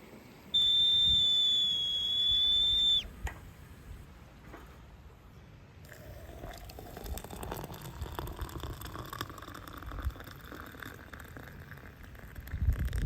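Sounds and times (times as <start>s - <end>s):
hot water pouring into a mug: 5.9s - 13.0s.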